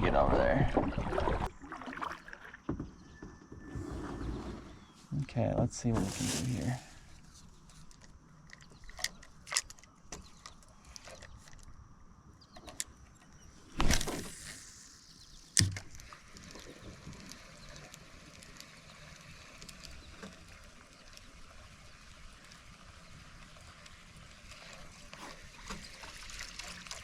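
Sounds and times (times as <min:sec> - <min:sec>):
small clicks: 0:15.4 - 0:21.4.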